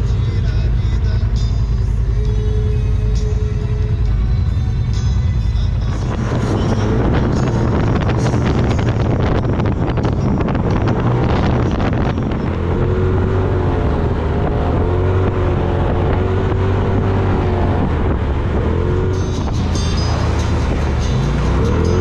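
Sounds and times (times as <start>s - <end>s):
drivetrain whine: 0.0s - 22.0s
utility vehicle engine running: 0.0s - 22.0s
wind buffeting microphone: 5.8s - 22.0s.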